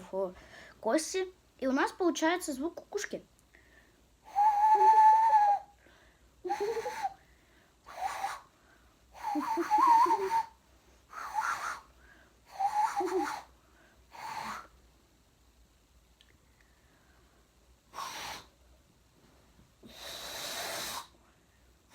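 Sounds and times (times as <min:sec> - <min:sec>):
breathy hand whistle hoots: 0:04.3 - 0:05.8, 0:06.5 - 0:07.2, 0:07.9 - 0:08.5, 0:09.2 - 0:11.9, 0:12.5 - 0:13.5, 0:17.9 - 0:18.5.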